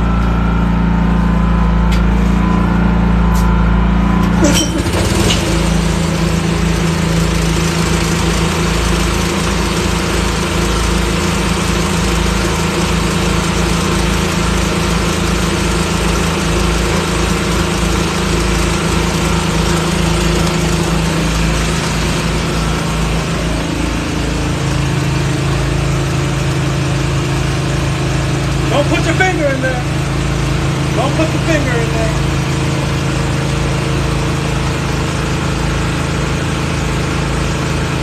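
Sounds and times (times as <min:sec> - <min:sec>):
motor running steadily: 0:00.0 - 0:38.0
air compressor pulsing and hissing: 0:04.3 - 0:26.6.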